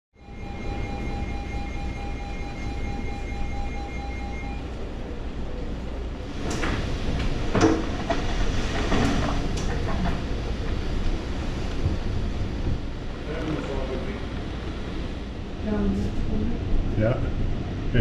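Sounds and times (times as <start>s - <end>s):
faint pulsing beep: 0.2s - 4.7s
storm wind roaring: 0.2s - 18.0s.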